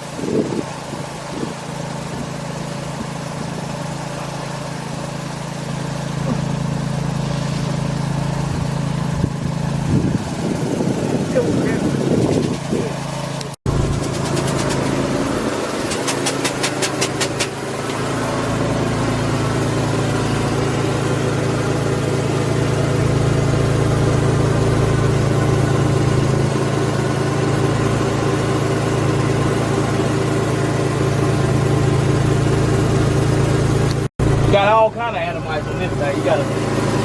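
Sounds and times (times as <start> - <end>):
farm machine engine idling: 0.0 - 37.0.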